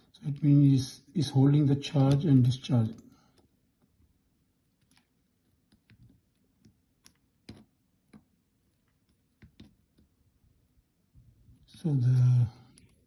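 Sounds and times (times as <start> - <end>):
faint clicks and taps: 2.0 - 10.4, 12.6 - 13.0.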